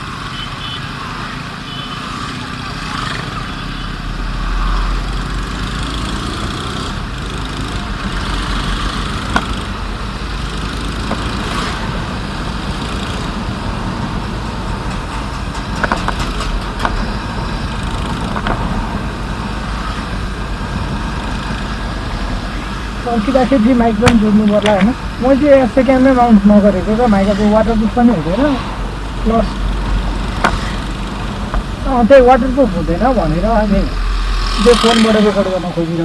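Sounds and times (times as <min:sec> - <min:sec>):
motor scooter engine: 0:00.0 - 0:36.0
sharp knocks: 0:30.3 - 0:31.8.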